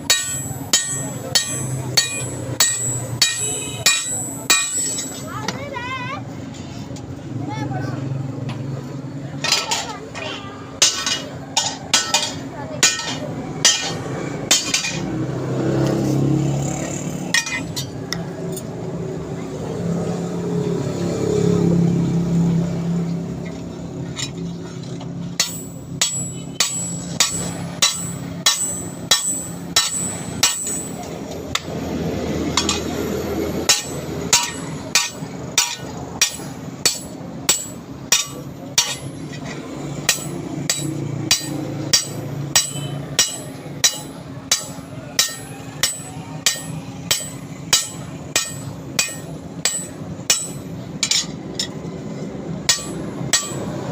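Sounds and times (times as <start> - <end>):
hammer striking steel: 0.0 - 5.6, 9.4 - 16.0, 16.6 - 18.7, 25.4 - 31.8, 32.5 - 33.0, 33.6 - 51.9, 52.6 - 53.9.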